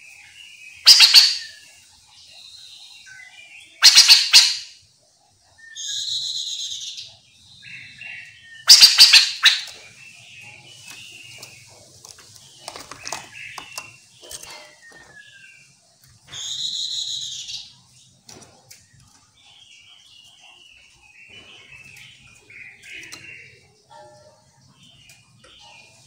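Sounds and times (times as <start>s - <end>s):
bird chirps: 0.0s - 26.0s
bird harsh chattering: 0.8s - 1.6s, 3.8s - 4.8s, 7.6s - 15.4s.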